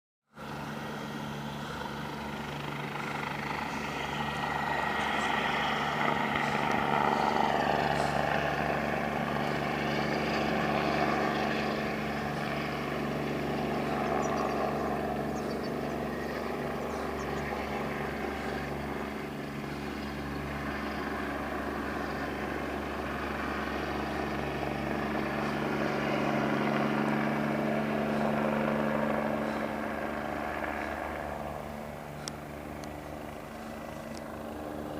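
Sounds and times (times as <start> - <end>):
helicopter engine and rotor: 0.3 - 34.9.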